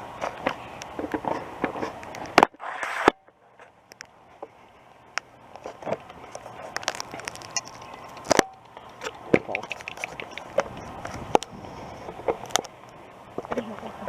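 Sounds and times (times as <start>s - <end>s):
loud burst of noise: 2.4s - 3.4s
camera handling clicks and rubbing: 5.6s - 11.5s.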